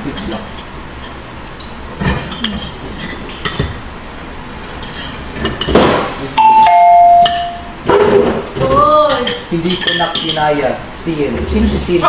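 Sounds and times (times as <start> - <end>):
loud steady high tone: 6.4 - 7.8
cutlery clinking on plates: 9.1 - 10.5.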